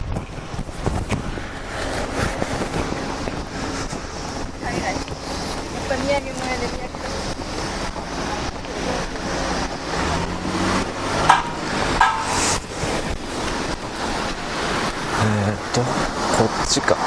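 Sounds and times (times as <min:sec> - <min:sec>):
road vehicle passing: 0:00.0 - 0:17.0
wind buffeting microphone: 0:00.0 - 0:17.0
sharp high knocks: 0:10.8 - 0:13.9.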